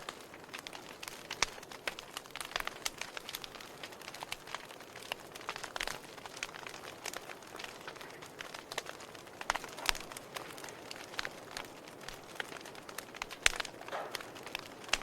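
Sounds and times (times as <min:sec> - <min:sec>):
fire hissing: 0:00.0 - 0:15.0
wood fire popping and snapping: 0:00.0 - 0:15.0.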